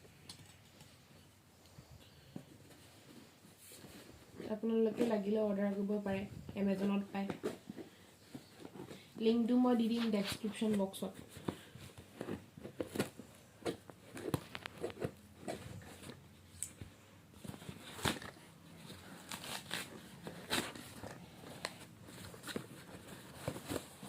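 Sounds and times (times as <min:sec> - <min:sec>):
packaging clicking and crinkling: 0:11.4 - 0:16.8.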